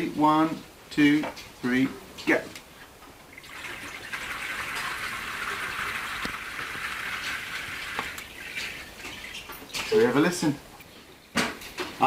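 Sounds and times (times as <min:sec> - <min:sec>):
water pouring and splashing: 0:03.3 - 0:10.1.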